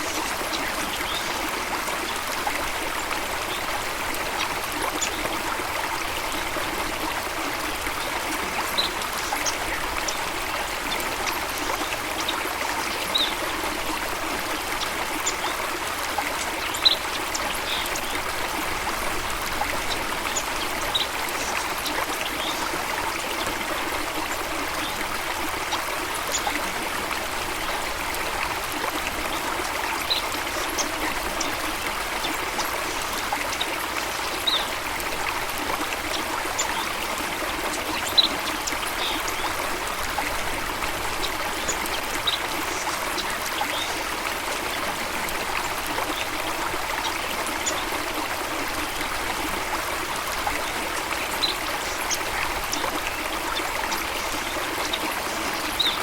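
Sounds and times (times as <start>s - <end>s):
stream water rushing: 0.0s - 56.0s.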